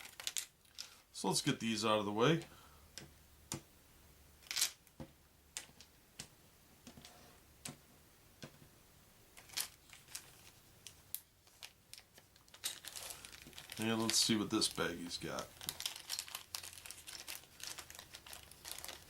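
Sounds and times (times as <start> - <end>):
plastic bags rustling: 9.4 - 19.0.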